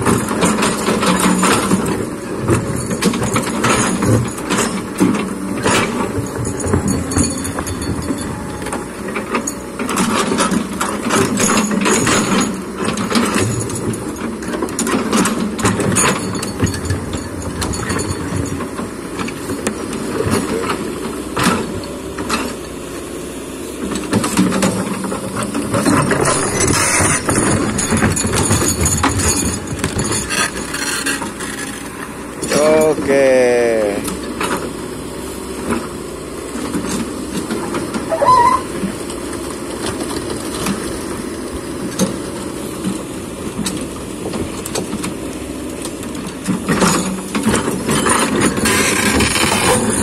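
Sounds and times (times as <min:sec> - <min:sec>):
clanks and knocks of rocks: 0:00.0 - 0:22.6, 0:23.8 - 0:33.0, 0:41.8 - 0:50.0
excavator diesel engine running: 0:00.0 - 0:50.0.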